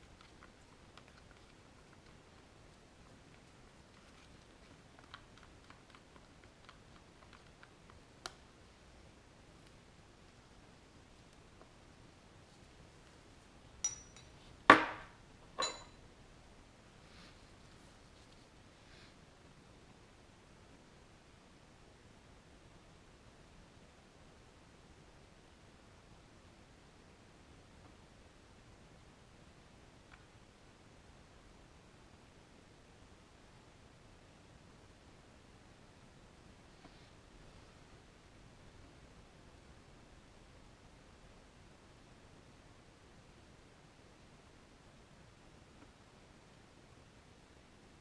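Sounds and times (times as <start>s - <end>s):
faint microphone hiss: 0.0s - 48.0s
small objects clicking and tapping: 13.8s - 16.0s.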